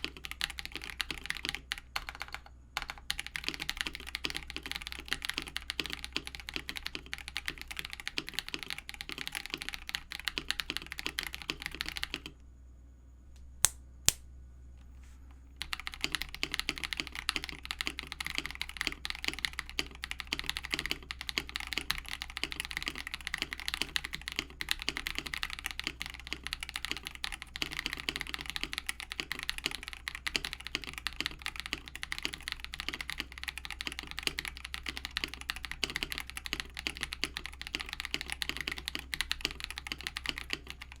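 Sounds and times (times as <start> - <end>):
fast typing on mechanical keyboard: 0.0 - 12.4, 15.6 - 41.0
sharp clicks: 13.4 - 14.3.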